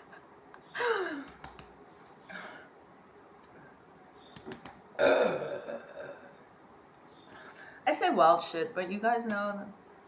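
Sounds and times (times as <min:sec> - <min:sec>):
woman belching loudly: 0:05.0 - 0:06.4.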